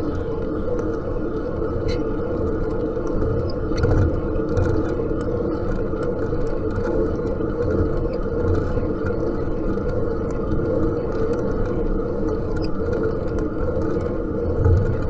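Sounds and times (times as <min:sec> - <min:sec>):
fan whirring: 0:11.3 - 0:15.0.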